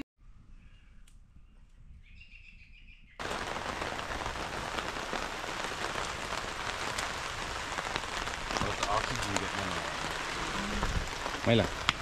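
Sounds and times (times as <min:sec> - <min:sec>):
faint bird calls: 0:00.4 - 0:03.2
loud steady rainfall: 0:03.2 - 0:12.0.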